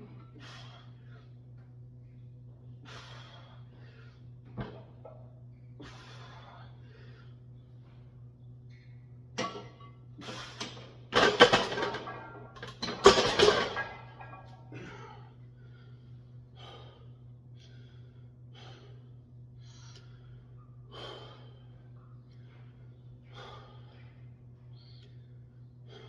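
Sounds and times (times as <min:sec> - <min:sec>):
low hum: 0:00.0 - 0:26.0
man breathing hard: 0:00.3 - 0:01.5, 0:02.7 - 0:04.4, 0:05.6 - 0:08.0, 0:14.7 - 0:26.0.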